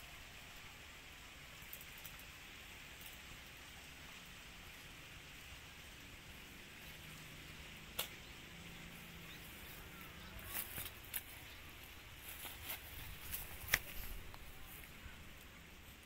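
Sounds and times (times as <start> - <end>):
faint outdoor hiss: 0.0 - 16.0
sharp snap: 7.9 - 8.2.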